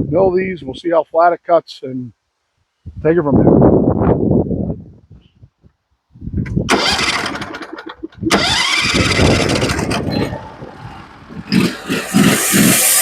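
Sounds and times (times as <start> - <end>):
sawmill engine running: 6.7 - 13.0.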